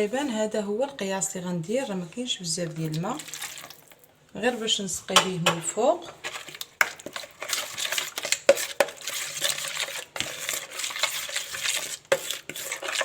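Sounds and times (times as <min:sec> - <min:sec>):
spoon scraping and clinking in bowl: 0:05.2 - 0:13.0.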